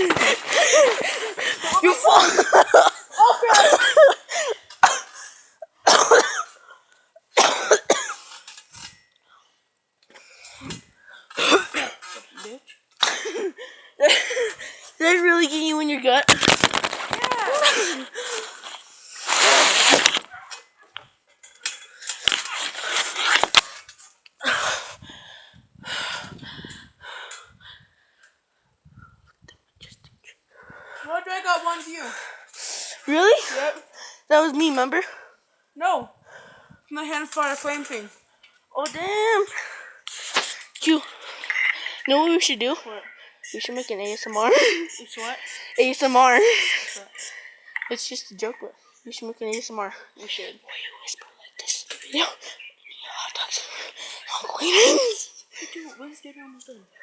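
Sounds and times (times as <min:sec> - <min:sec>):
boy breathing heavily: 0:00.0 - 0:02.2, 0:13.4 - 0:15.0, 0:17.2 - 0:20.5, 0:24.4 - 0:28.2
person coughing: 0:03.5 - 0:05.3, 0:05.9 - 0:06.6, 0:07.4 - 0:08.3, 0:11.3 - 0:12.2, 0:13.0 - 0:14.5.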